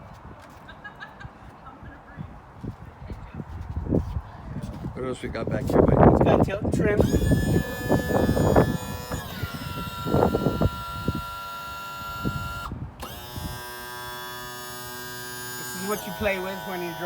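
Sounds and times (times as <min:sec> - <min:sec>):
electric tilt motor whining: 0:06.8 - 0:17.0.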